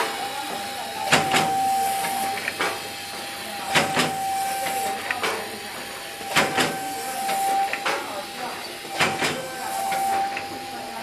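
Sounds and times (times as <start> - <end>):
packaging machine whine: 0.0 - 11.0.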